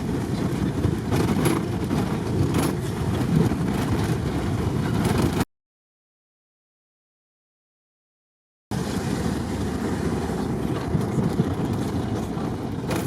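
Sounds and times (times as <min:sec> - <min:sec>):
vehicle engine and road rumble: 0:00.0 - 0:05.5, 0:08.7 - 0:13.0.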